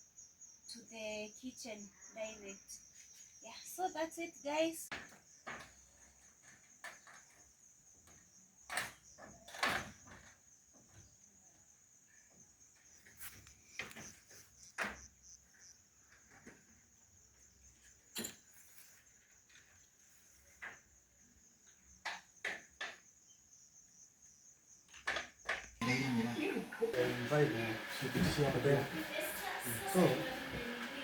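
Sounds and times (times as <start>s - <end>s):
crickets chirring: 0.0s - 25.8s
sharp knocks and clicks: 22.0s - 23.1s.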